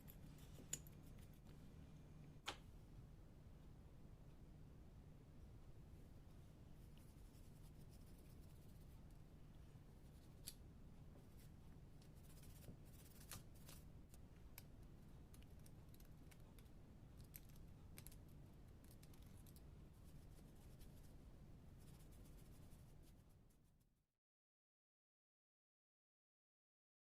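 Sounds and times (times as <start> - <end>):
light clicks and small scrapes: 0.0 - 1.6, 6.8 - 21.2
low steady hum: 0.0 - 23.8.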